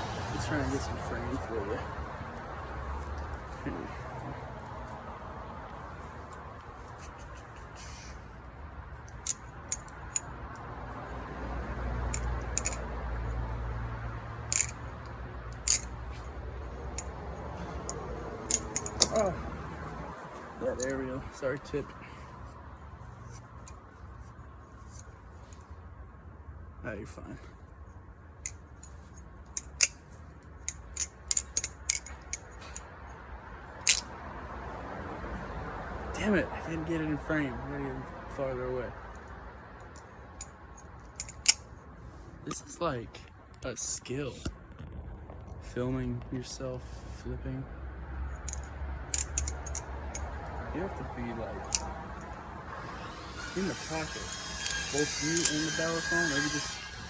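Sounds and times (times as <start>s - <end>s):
butterfly knife handles clicking: 9.0s - 10.7s, 12.1s - 12.9s, 14.5s - 17.2s, 17.8s - 19.3s, 28.4s - 32.9s, 33.8s - 34.1s, 39.2s - 41.7s, 48.4s - 50.4s, 51.6s - 52.4s.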